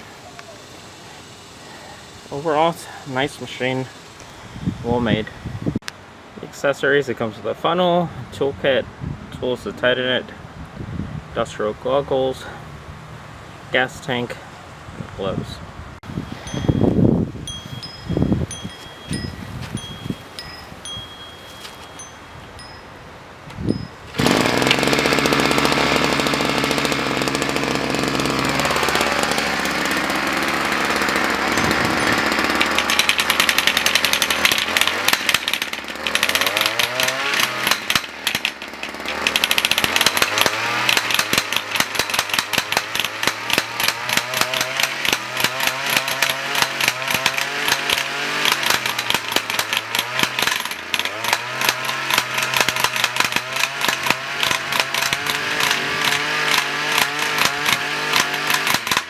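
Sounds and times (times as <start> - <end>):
two-stroke engine running: 0.0 - 5.4, 24.1 - 59.0
hammering rattle: 23.7 - 59.0.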